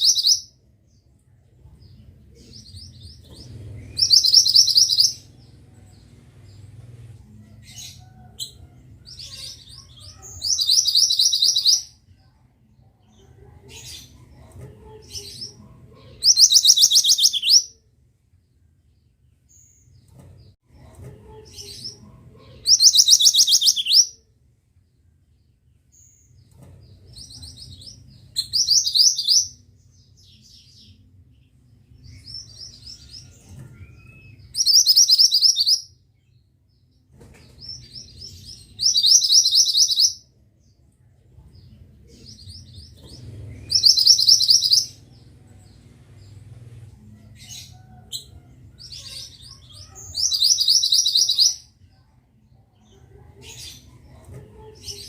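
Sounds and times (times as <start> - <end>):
soft bird chirps: 1.8 - 7.0, 22.6 - 24.2, 31.9 - 36.5, 37.3 - 40.2, 41.6 - 46.7, 47.4 - 51.7.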